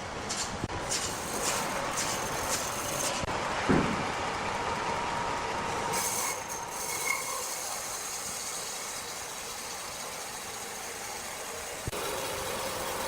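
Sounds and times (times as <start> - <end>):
machinery high whine: 0.0 - 13.0
thump: 3.7 - 4.0.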